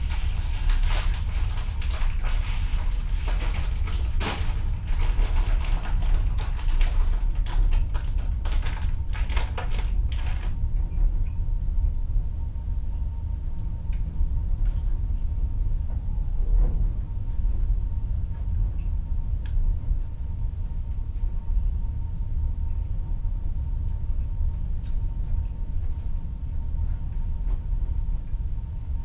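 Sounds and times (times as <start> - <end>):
ship hull rumble: 0.0 - 22.4
faint steady hum: 0.0 - 29.0.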